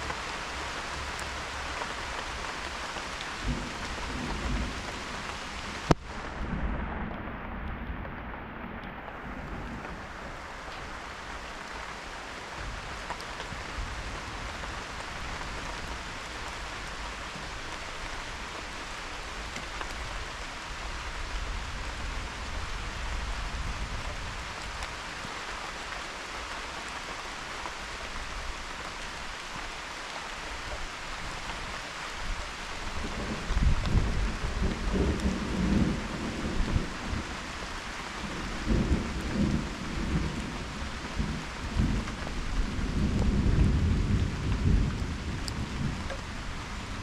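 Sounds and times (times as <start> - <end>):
steady rain: 0.0 - 47.0
thunder rumble: 3.0 - 11.7, 32.8 - 47.0.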